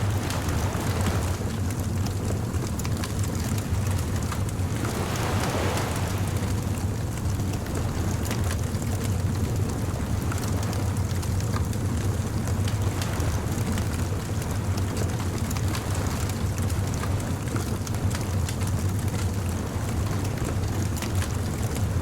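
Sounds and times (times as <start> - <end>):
surf rushing: 0.0 - 2.7, 3.3 - 8.7.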